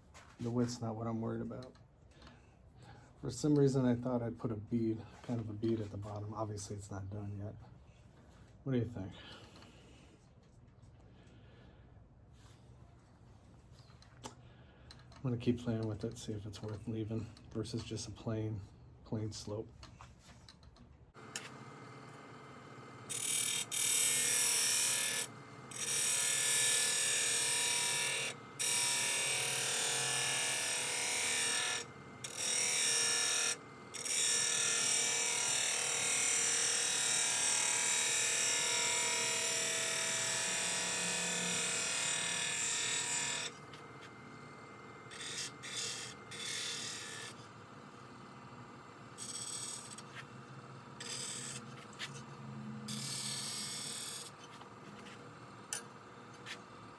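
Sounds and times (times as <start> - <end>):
lathe tool cutting wood: 21.2 - 56.9.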